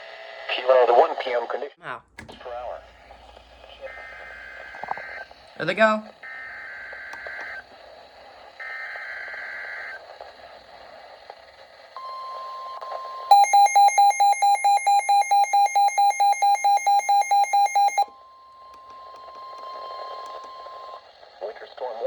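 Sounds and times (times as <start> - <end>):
warbling data tones: 13.3 - 18.0
rapid alarm beeping: 13.3 - 18.1
steady warning tone: 13.3 - 18.1.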